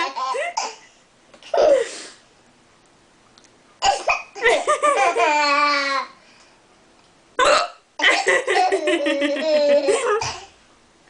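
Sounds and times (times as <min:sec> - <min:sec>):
person laughing: 0:08.0 - 0:10.3.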